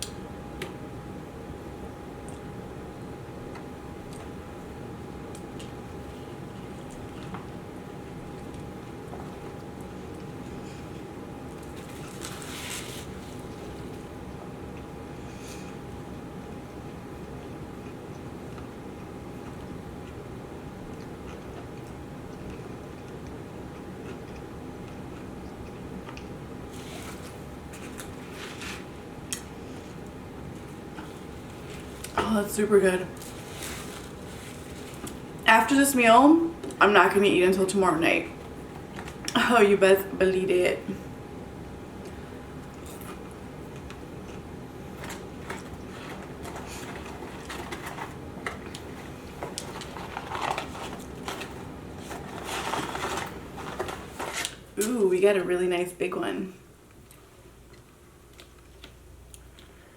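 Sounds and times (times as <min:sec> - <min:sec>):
low room hum: 0:00.0 - 0:59.9
crunching or rustling: 0:11.6 - 0:14.0, 0:33.0 - 0:35.5, 0:44.9 - 0:54.6
person chewing food: 0:20.8 - 0:28.3, 0:42.0 - 0:53.2.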